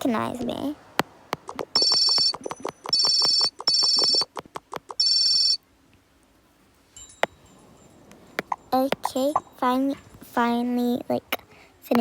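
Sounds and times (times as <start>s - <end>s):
rapid sharp clicks: 1.0s - 5.6s
high-pitched electronic beeps: 1.4s - 5.4s.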